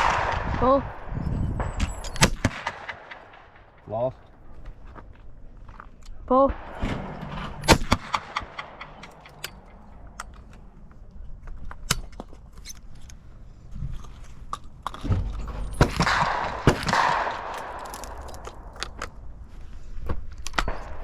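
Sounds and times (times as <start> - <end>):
shotgun shot: 0.0 - 4.0, 6.5 - 9.7, 15.8 - 18.7
gun handling clicks and knocks: 7.0 - 19.3, 20.0 - 21.0.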